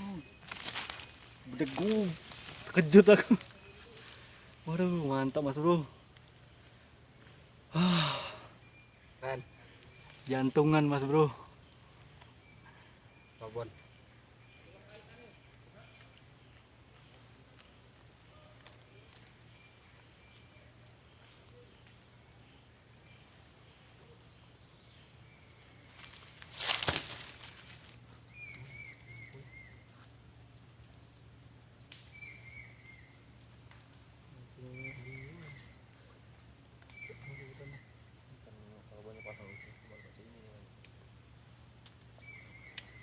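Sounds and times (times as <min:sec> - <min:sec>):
insect drone: 0:00.0 - 0:43.0
bird chirping: 0:08.1 - 0:16.3, 0:28.3 - 0:33.4, 0:34.4 - 0:41.1, 0:42.1 - 0:43.0.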